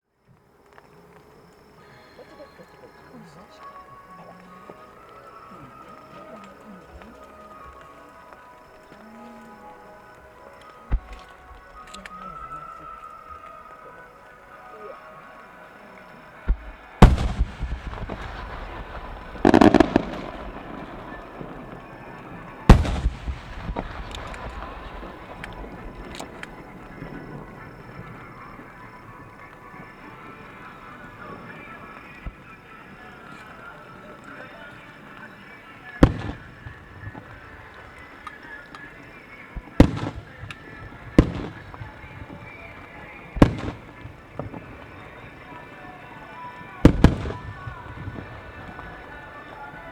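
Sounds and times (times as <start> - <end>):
small firework cracks: 0.3 - 49.9
fireworks booming: 16.3 - 49.9.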